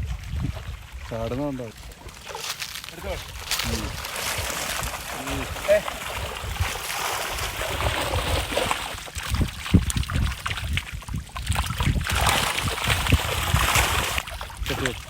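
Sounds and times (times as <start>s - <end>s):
water splashing and trickling: 0.0s - 15.0s
wind rumbling on microphone: 0.0s - 15.0s.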